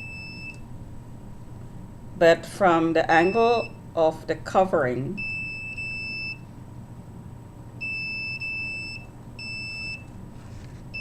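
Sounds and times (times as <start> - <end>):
high-pitched electronic alarm beeps: 5.2 - 6.4, 7.8 - 10.0.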